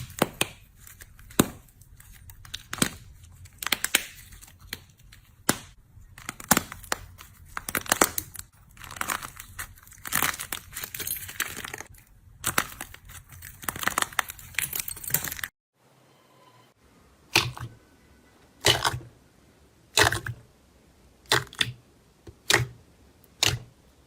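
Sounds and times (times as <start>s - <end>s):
slime squelching and popping: 17.3s - 17.7s, 18.6s - 19.1s, 21.2s - 23.7s.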